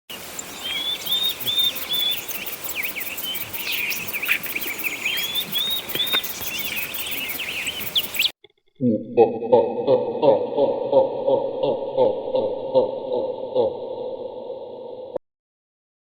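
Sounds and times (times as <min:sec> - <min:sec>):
birds singing whistled notes: 0:00.1 - 0:08.3
bird chirps: 0:00.1 - 0:08.4.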